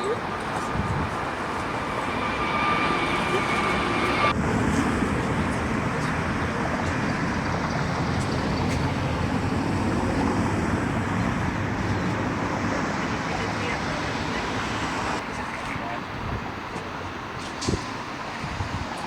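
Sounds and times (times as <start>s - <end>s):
jet engine rumble: 0.0s - 19.0s
high whine: 0.3s - 15.2s.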